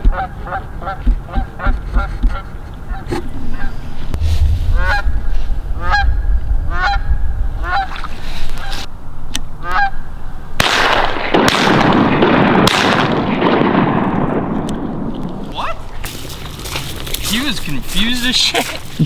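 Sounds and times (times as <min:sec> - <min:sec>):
goose honking: 0:09.6 - 0:10.0.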